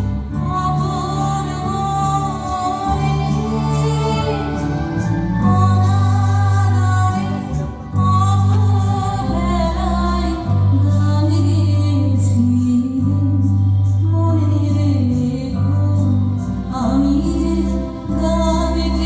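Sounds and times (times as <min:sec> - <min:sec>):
slow background music: 0:00.0 - 0:19.0.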